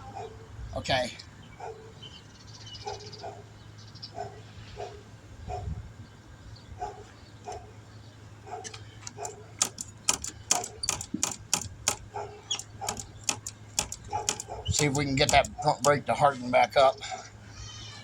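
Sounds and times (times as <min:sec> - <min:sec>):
sharp irregular clicks: 0:09.0 - 0:16.2.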